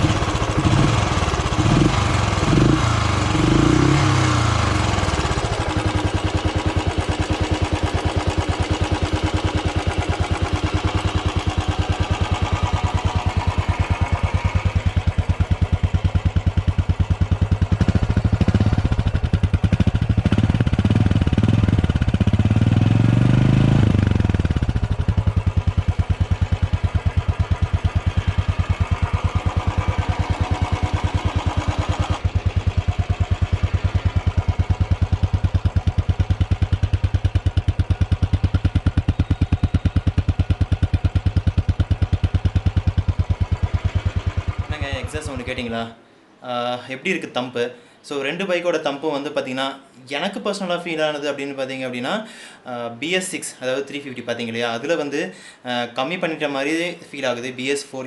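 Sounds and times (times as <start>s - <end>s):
motorcycle engine idling and revving: 0.0s - 45.9s.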